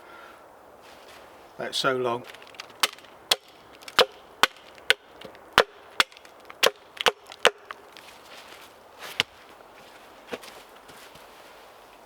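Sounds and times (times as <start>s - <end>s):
wood being chopped: 2.2s - 8.2s.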